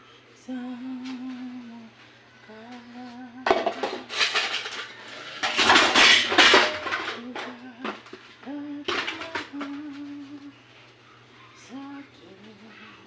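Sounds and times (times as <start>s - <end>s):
dishes and cutlery clattering: 3.5s - 8.2s, 8.9s - 9.8s.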